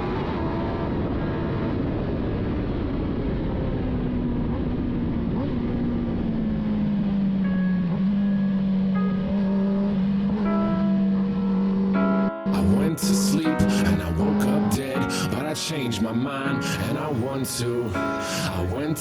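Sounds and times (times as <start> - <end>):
motor vehicle engine rumbling: 4.9 - 12.3.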